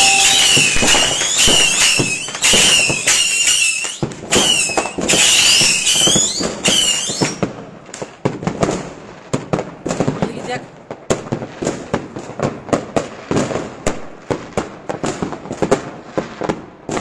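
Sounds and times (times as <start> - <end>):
whistling rockets: 0.0 - 7.5
firework cracks and bangs: 0.0 - 17.0.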